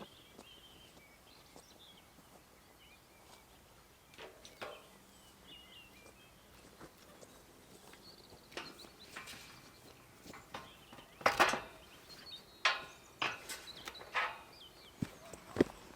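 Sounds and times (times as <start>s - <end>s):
faint birdsong: 0.0s - 15.9s
knocks and scuffs: 15.0s - 15.9s.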